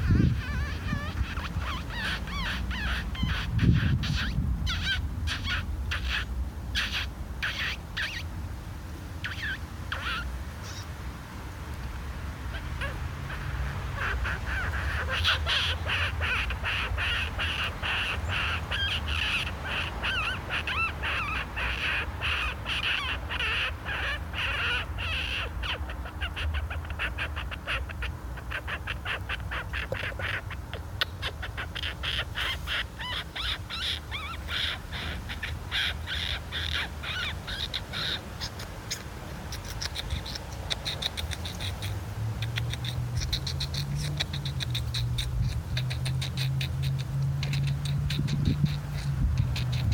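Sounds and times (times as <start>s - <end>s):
harsh animal calls: 12.5s - 49.9s.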